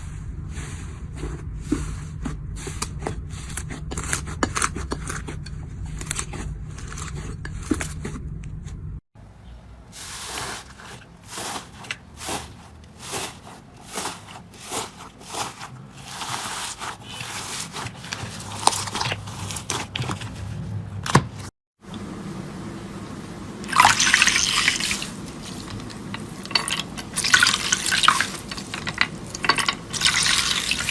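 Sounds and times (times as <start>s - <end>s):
wet splashing: 23.7s - 30.9s.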